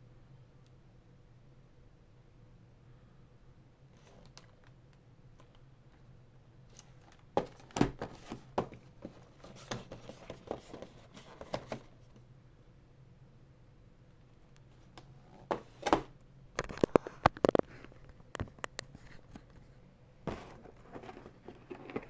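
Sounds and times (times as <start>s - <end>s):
cardboard box being handled: 7.1s - 11.9s.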